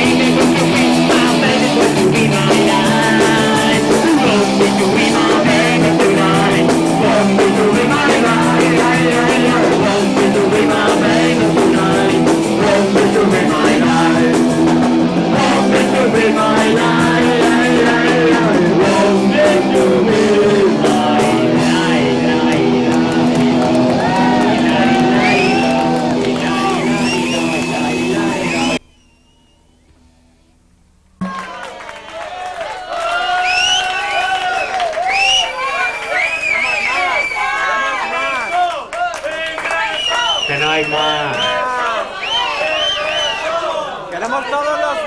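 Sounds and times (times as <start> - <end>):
person singing: 0.0 - 28.8
punk rock band playing live: 0.0 - 28.8
distorted electric guitar chords: 0.0 - 29.0.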